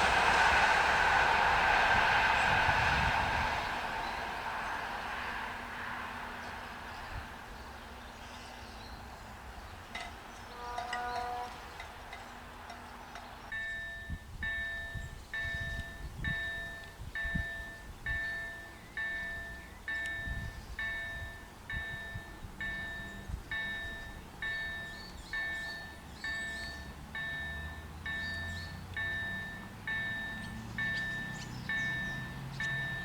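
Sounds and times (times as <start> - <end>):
level crossing bell ringing: 13.5 - 33.0.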